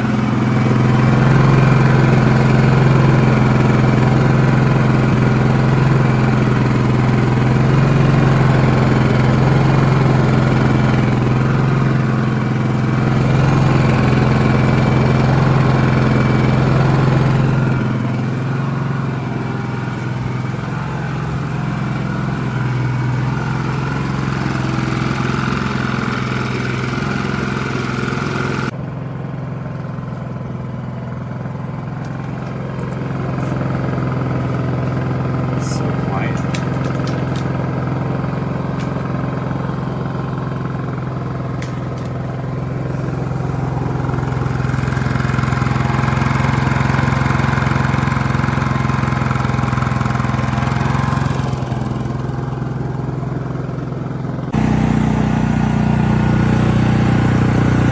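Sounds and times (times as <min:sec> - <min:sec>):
generator engine running: 0:00.0 - 0:57.9.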